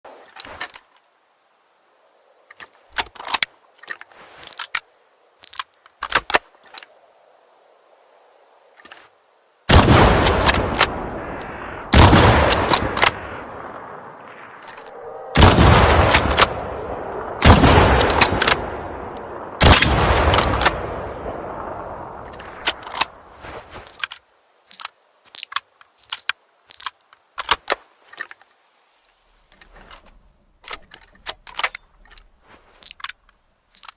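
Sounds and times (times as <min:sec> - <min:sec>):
rifle shots echoing: 0:09.7 - 0:14.6, 0:15.4 - 0:23.2
rifle bolt metallic clicks: 0:12.4 - 0:13.9, 0:15.9 - 0:21.4, 0:22.2 - 0:23.1, 0:29.5 - 0:33.9.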